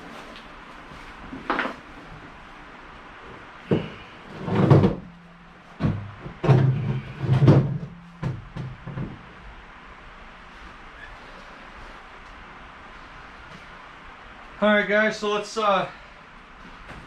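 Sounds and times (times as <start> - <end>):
steel lid clunking and knocking: 3.6 - 9.3.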